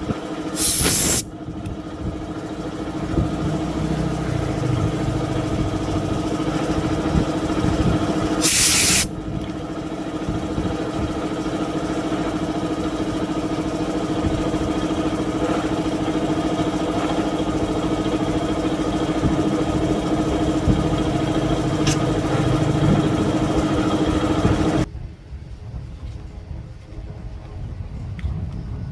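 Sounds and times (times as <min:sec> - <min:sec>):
small petrol engine running: 0:00.0 - 0:24.9
spray hiss: 0:00.6 - 0:01.3, 0:08.4 - 0:09.1.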